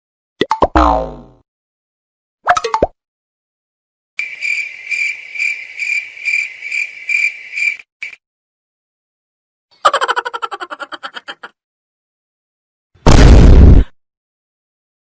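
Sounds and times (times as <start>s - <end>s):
cricket chirping trill: 4.2s - 8.2s.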